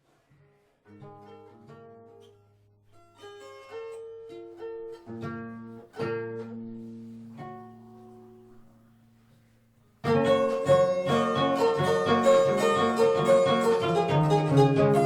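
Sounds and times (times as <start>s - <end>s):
harp being plucked: 10.0s - 15.0s.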